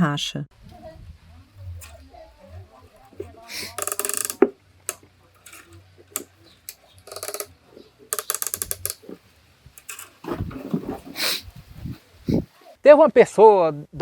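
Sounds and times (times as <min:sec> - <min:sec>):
tuning peg creaking clicks: 0:03.6 - 0:07.5, 0:08.1 - 0:09.2.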